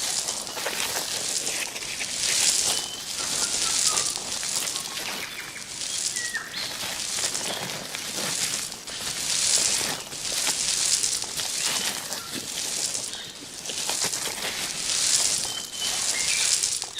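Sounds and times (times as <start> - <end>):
faint bird chirps: 2.6 - 6.8, 15.2 - 16.7.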